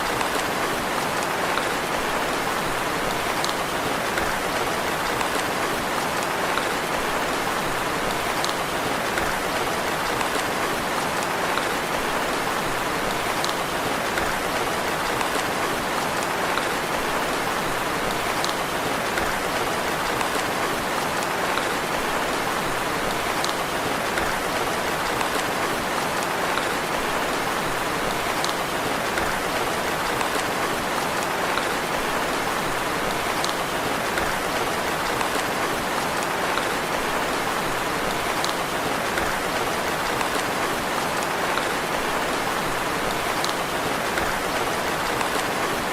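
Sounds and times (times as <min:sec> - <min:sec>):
gentle rain: 0:00.0 - 0:45.9.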